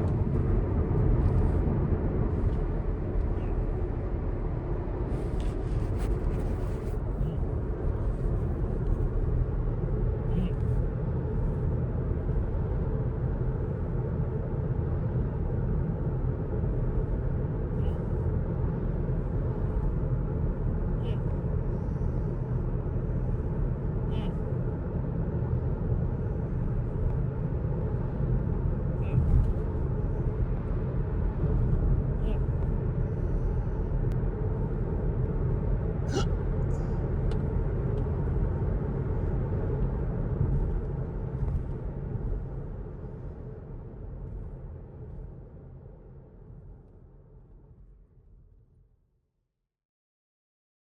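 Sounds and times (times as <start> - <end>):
car road and engine rumble: 0.0 - 48.4
faint short sounds: 36.1 - 37.0.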